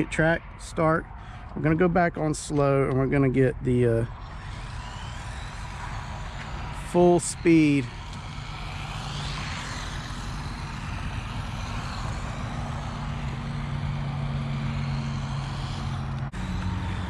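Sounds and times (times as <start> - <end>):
toy car electric motor humming: 3.9 - 17.0.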